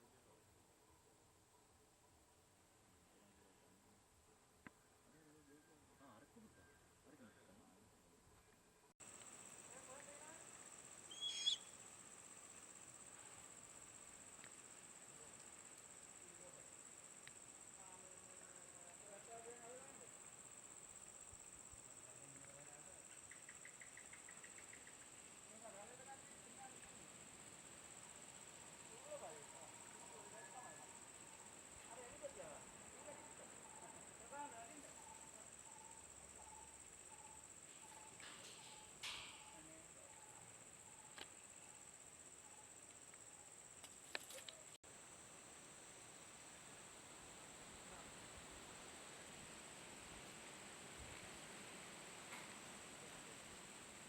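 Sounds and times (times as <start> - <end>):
faint distant voices: 0.0 - 11.8, 12.8 - 41.9
high-pitched insect chorus: 9.0 - 54.0
brief rustle: 43.8 - 44.8.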